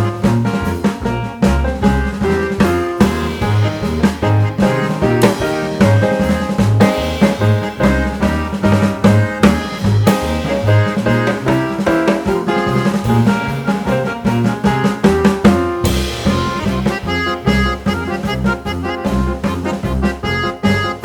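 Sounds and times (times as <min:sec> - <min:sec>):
upbeat music with drums and keyboard: 0:00.0 - 0:21.0
cymbal crash: 0:15.8 - 0:18.4.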